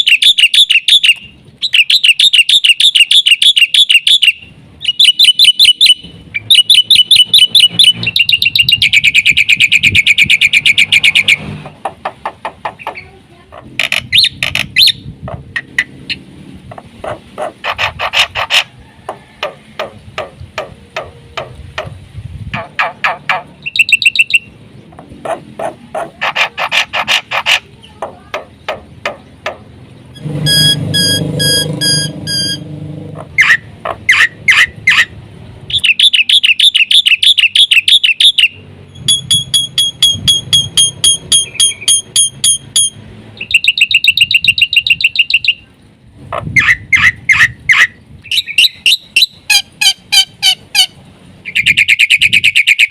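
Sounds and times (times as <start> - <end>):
bird singing trills and whistles: 0.0 - 11.5, 23.6 - 24.6, 35.7 - 45.6, 46.6 - 52.9
harsh rasping bird call: 25.3 - 29.3, 30.2 - 35.1.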